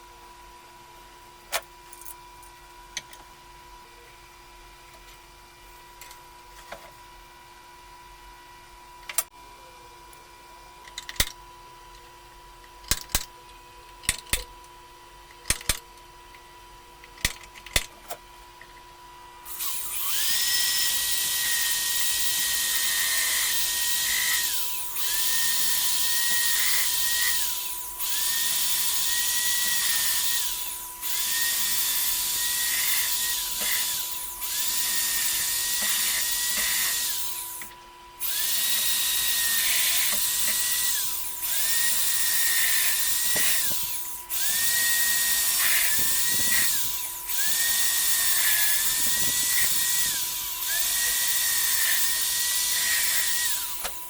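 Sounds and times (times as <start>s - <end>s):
electric drill whining: 19.5s - 54.0s.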